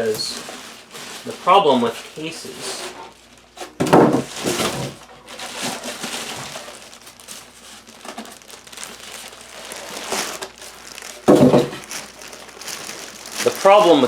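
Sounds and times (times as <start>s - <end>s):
packaging crinkling: 4.2s - 14.0s.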